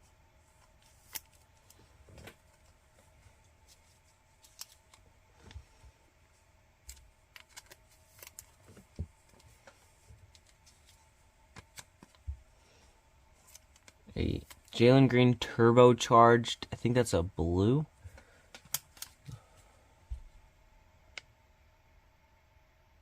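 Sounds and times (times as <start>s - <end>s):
low room hum: 0.0s - 23.0s
trading cards clicking and rustling: 3.7s - 5.0s, 6.8s - 12.2s, 13.4s - 14.8s, 18.5s - 19.4s.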